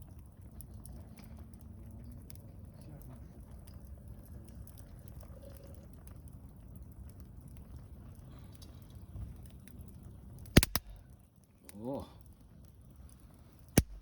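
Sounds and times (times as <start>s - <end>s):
campfire crackling and popping: 0.0s - 14.0s
steady low rumble: 10.4s - 11.2s, 13.7s - 14.0s.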